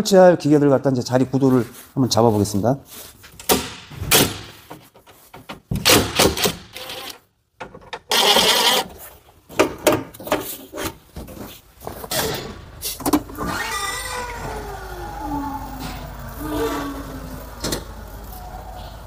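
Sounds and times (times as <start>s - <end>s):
heavy machine noise: 12.6s - 19.0s.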